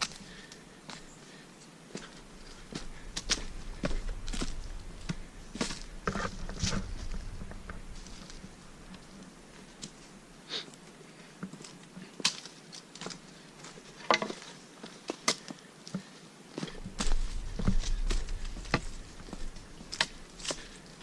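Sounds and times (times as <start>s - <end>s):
footsteps crunching on trail: 0.0s - 21.0s
low rumble: 16.9s - 20.3s.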